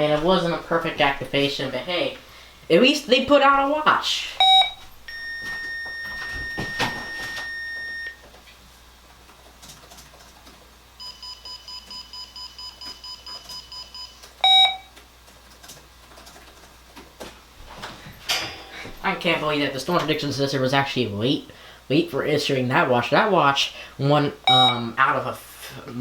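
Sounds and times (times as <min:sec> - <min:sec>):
electronic alert beeps: 0:04.4 - 0:08.2, 0:11.0 - 0:14.8, 0:24.5 - 0:24.8.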